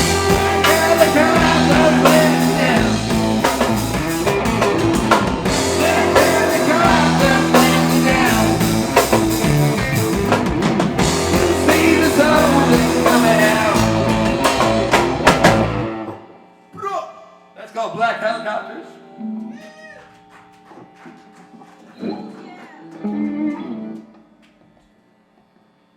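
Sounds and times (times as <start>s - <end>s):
live rock band playing loudly: 0.0s - 16.2s.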